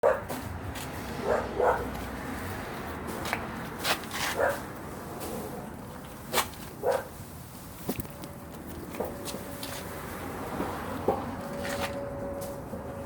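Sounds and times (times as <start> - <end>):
dog barking: 0.0 - 0.3, 1.2 - 1.9, 4.4 - 4.6, 6.8 - 7.1.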